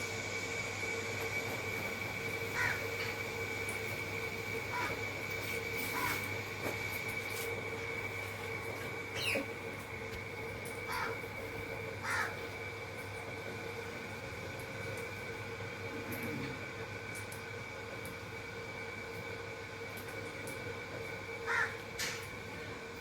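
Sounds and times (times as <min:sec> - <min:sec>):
steady background hum: 0:00.0 - 0:23.0
parakeet squawking: 0:09.2 - 0:09.5.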